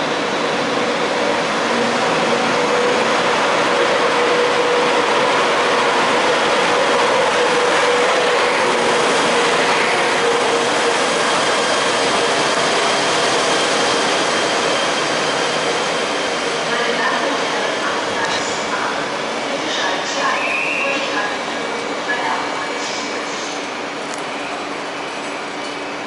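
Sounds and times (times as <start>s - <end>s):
train rolling noise: 0.0s - 26.0s
train brakes squealing: 19.8s - 21.3s.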